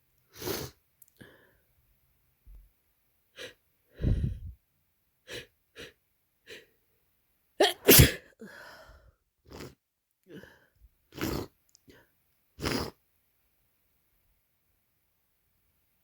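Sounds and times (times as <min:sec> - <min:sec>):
person sneezing: 0:07.6 - 0:08.3.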